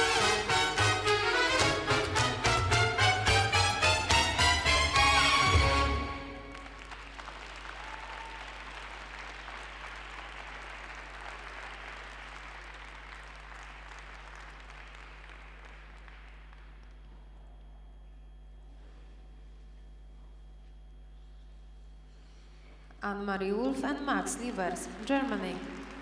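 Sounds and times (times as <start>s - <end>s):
music: 0.0s - 7.0s
audience applauding: 3.6s - 17.3s, 24.4s - 26.0s.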